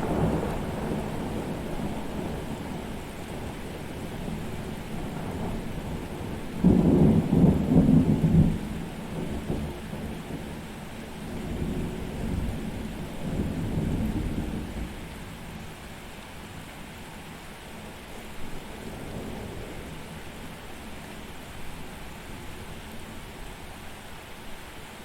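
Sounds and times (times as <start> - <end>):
thunder rumbling: 0.0 - 10.5
steady rain: 0.0 - 25.0.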